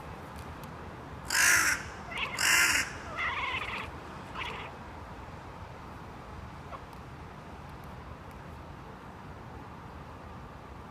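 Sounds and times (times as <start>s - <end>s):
cat making caw-like calls: 1.3s - 4.7s
crows cawing: 1.3s - 4.7s.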